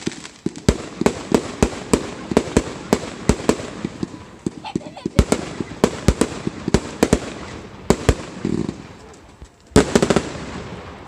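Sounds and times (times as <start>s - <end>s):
crackling firework burst: 0.0s - 11.0s
firework bangs: 0.0s - 11.0s.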